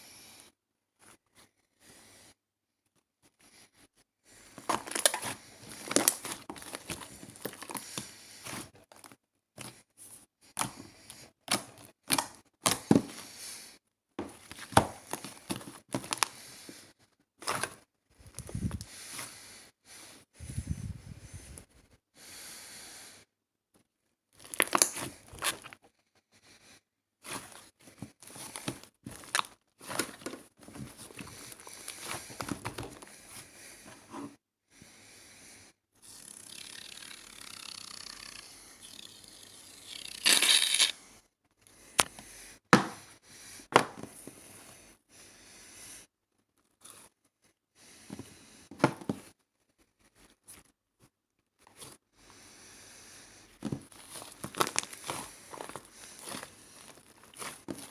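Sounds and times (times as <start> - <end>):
rustling and crinkling handling: 4.5 - 10.9, 14.2 - 16.8, 24.4 - 25.8, 27.2 - 34.4, 53.5 - 57.9.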